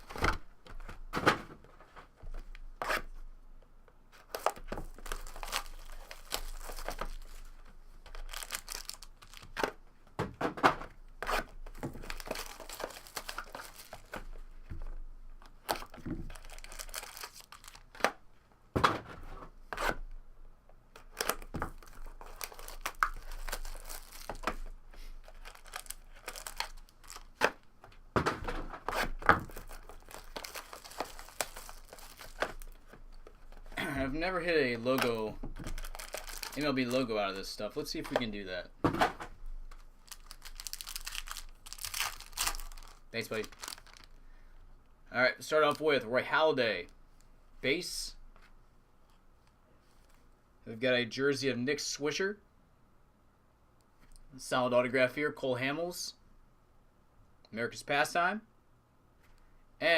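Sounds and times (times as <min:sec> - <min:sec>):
packaging tearing and crinkling: 0:04.4 - 0:09.6, 0:11.2 - 0:14.2, 0:15.6 - 0:18.0, 0:21.0 - 0:24.6, 0:25.2 - 0:27.4, 0:28.9 - 0:32.9, 0:34.9 - 0:37.0, 0:39.7 - 0:44.1.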